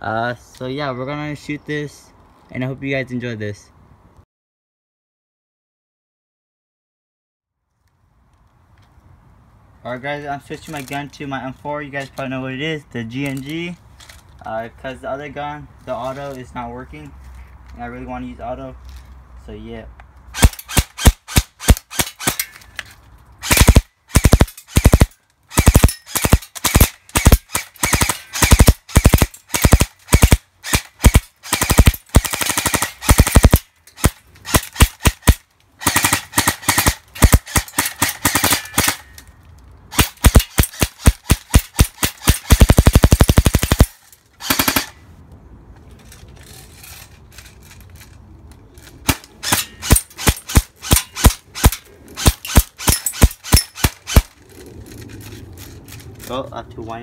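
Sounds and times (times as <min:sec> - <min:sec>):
airsoft rifle firing bursts: 0:23.4 - 0:39.0, 0:40.0 - 0:44.9.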